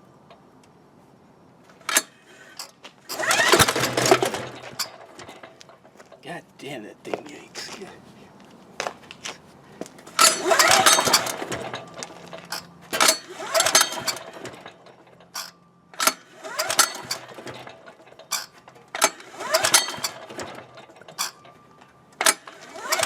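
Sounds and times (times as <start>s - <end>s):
generator pull starter rattling: 1.7s - 6.2s, 9.9s - 23.0s.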